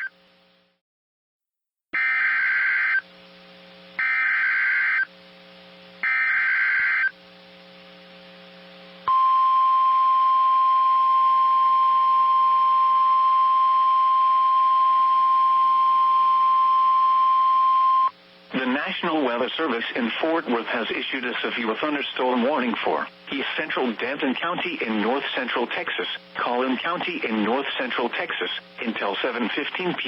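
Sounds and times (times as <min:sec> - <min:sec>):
steady single-pitch alarm tone: 0:02.0 - 0:03.1, 0:04.0 - 0:05.1, 0:06.0 - 0:07.2, 0:09.1 - 0:18.2.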